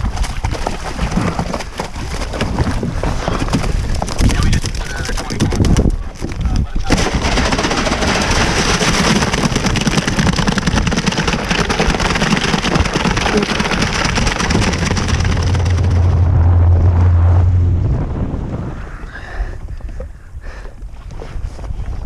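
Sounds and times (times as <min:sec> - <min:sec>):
wind buffeting microphone: 0:01.1 - 0:08.6, 0:12.6 - 0:22.0
jet ski engine: 0:13.2 - 0:18.0
steady low hum: 0:14.0 - 0:20.4.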